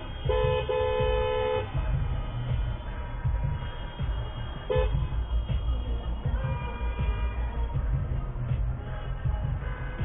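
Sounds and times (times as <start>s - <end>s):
car horn honking: 0.0s - 2.0s, 2.7s - 7.8s
road rumble from moving car: 0.0s - 10.0s.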